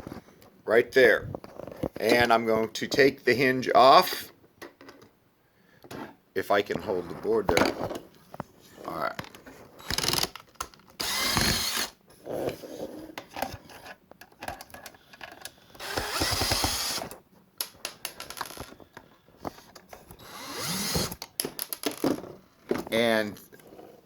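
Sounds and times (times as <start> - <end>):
power drill running: 9.8 - 10.3, 11.0 - 12.0, 15.8 - 17.2, 20.2 - 21.2.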